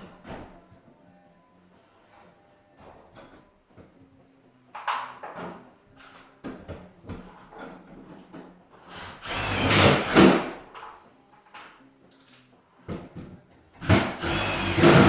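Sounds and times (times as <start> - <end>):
power drill whining: 9.0 - 10.4, 13.8 - 15.0.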